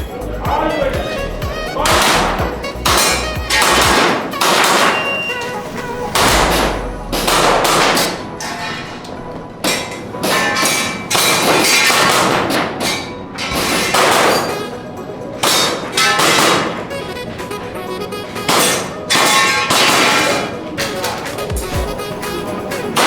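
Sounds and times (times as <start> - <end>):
background music: 0.0 - 23.0
airsoft pistol shots: 1.9 - 5.2, 6.2 - 8.2, 11.1 - 14.6, 15.4 - 16.8, 18.5 - 20.5
steel targets clanging: 1.9 - 14.8, 15.4 - 16.9, 18.5 - 21.3.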